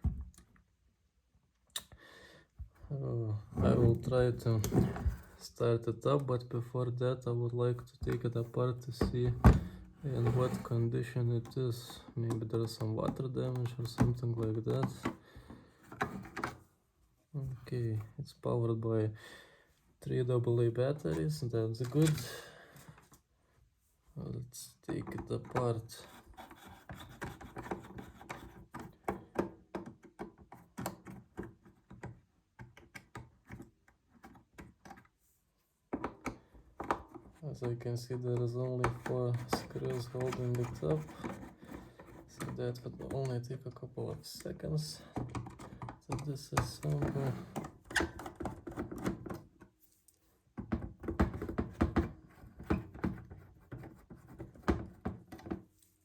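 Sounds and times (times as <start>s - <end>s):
case being handled: 3.5s - 5.4s.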